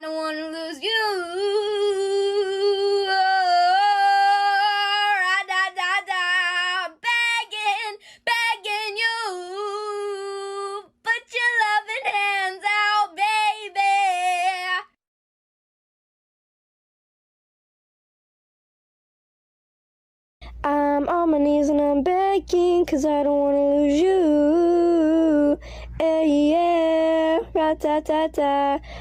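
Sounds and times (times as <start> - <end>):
singer breathing: 8.0 - 8.3, 25.6 - 26.0, 28.8 - 29.0.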